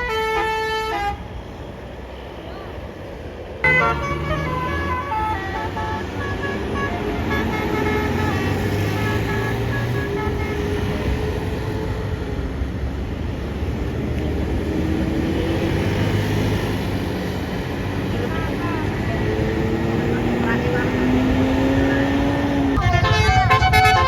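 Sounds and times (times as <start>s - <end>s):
melodic bus horn: 0.0s - 1.6s, 3.6s - 12.7s, 18.3s - 24.0s
bus engines droning: 0.0s - 24.0s
traffic: 0.0s - 24.0s.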